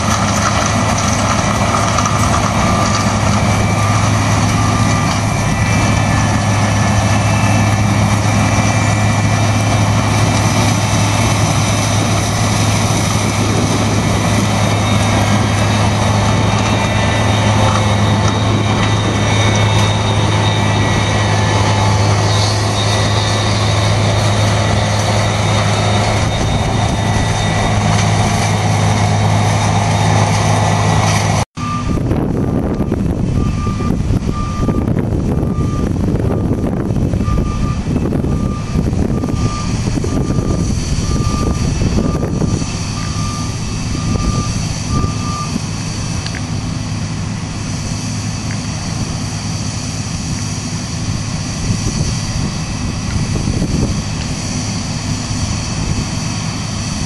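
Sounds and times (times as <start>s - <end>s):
diesel machinery droning: 0.0s - 57.0s
reversing beeper: 0.0s - 57.0s.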